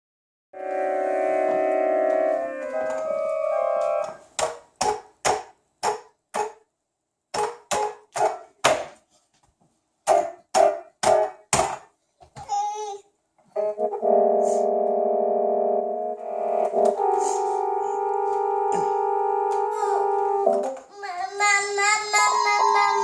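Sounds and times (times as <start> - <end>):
keyboard instrument notes: 0.6 - 4.3, 13.6 - 20.8, 21.9 - 23.0.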